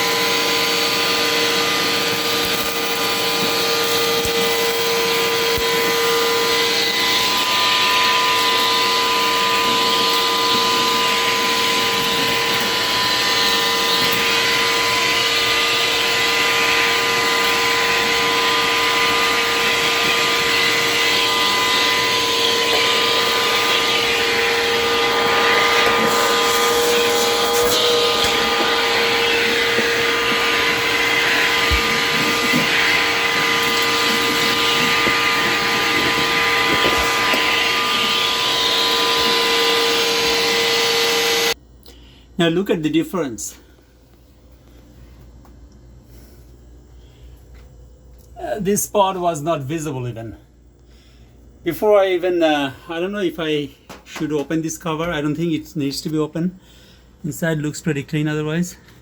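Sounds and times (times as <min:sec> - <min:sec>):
vacuum cleaner running: 0:00.0 - 0:41.6.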